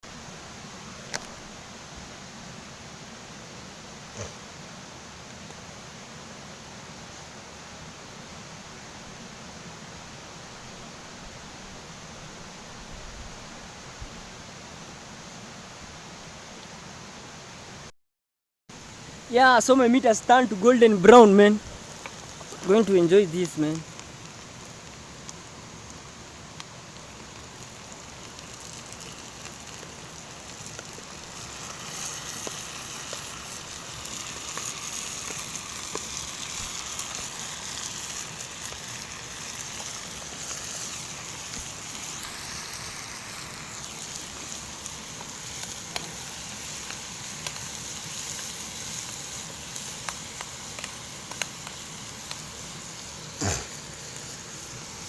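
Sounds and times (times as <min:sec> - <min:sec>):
beef sizzling in a pan: 0:18.8 - 0:55.0.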